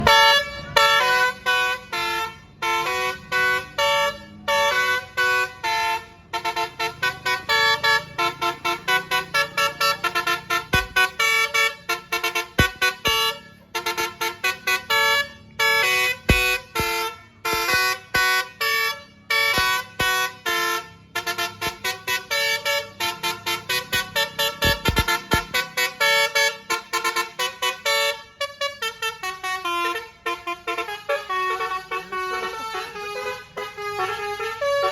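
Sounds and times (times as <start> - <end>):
multi-trumpet bus horn melody: 0.0 - 34.9.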